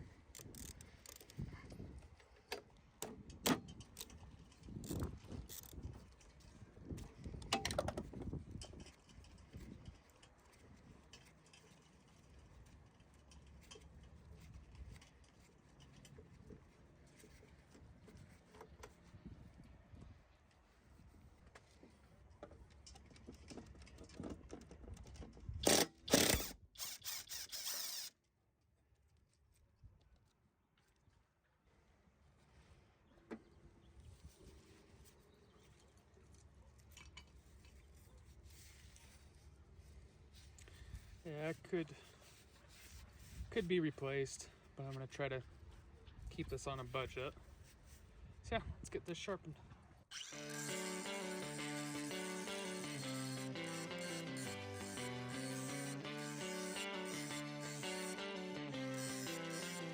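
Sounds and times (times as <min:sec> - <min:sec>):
tools clicking and knocking: 0:00.4 - 0:01.4, 0:07.4 - 0:09.3, 0:22.7 - 0:28.1
hand tools clicking on metal: 0:25.6 - 0:28.0
loud harsh power tool bursts: 0:25.6 - 0:28.1, 0:50.1 - 0:59.9.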